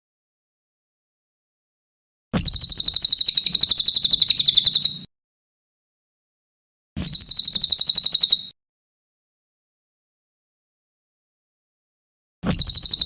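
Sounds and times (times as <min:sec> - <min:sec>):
songbird trilling: 0:02.4 - 0:05.1, 0:07.0 - 0:08.5, 0:12.5 - 0:13.0.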